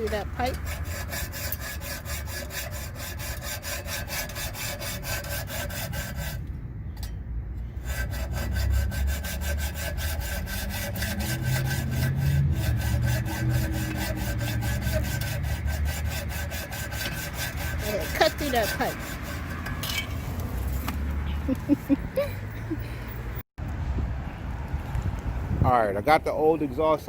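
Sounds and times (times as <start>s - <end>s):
saw cutting through metal pipe: 0.0s - 6.5s, 7.8s - 20.4s.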